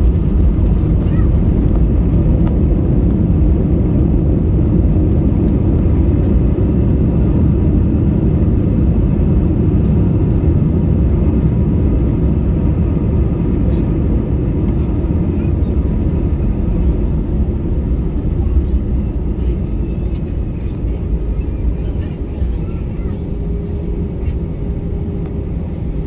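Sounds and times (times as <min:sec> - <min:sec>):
airplane cabin rumble: 0:00.0 - 0:26.0.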